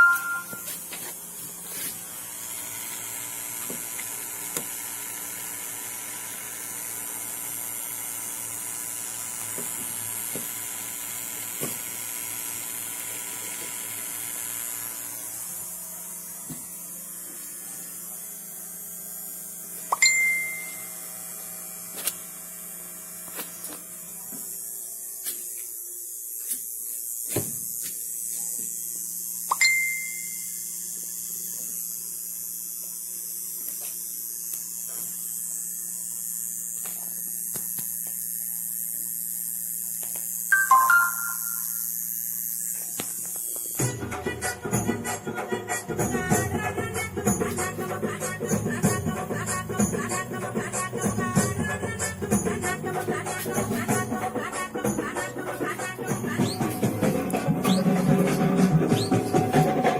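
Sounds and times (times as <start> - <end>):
short high beeps: 0.0 - 0.8, 19.9 - 21.0, 29.5 - 30.5, 40.6 - 41.8.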